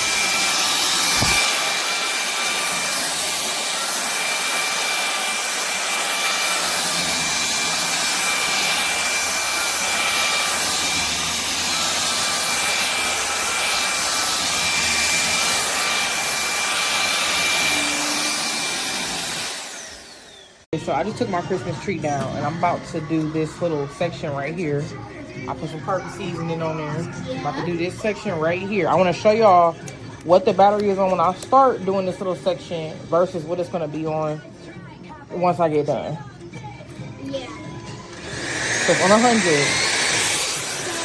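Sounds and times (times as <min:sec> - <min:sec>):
vacuum motor winding down: 0:00.0 - 0:20.7, 0:37.9 - 0:41.0
stick vacuum running: 0:00.0 - 0:23.8, 0:37.9 - 0:41.0.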